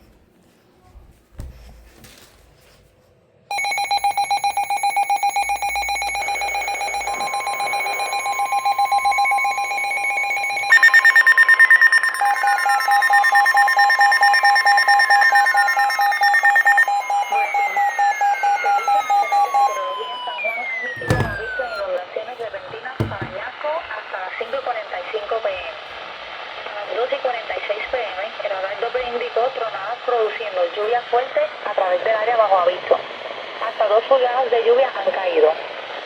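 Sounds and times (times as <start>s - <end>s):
higher beep: 3.5s - 21.9s, 23.0s - 23.4s
rapid pulsing beep: 3.5s - 21.9s
steady alarm tone: 3.5s - 22.0s, 22.6s - 23.4s
falling chirps: 5.4s - 21.9s.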